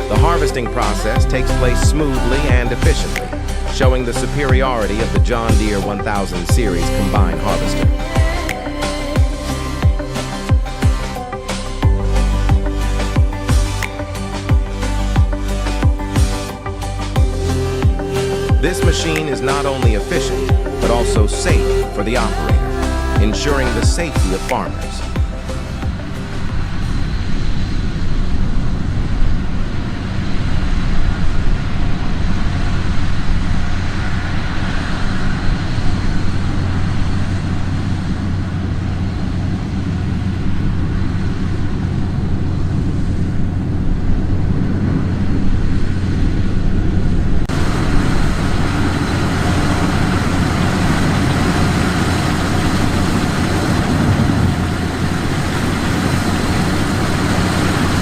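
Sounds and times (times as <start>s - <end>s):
combine harvester running: 0.0s - 58.0s.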